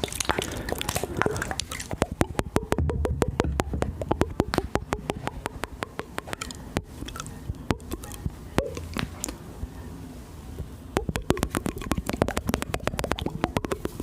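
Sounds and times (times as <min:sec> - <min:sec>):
wet mouth clicks and smacks: 0:00.0 - 0:09.4, 0:11.0 - 0:14.0
low rumble: 0:02.8 - 0:04.6.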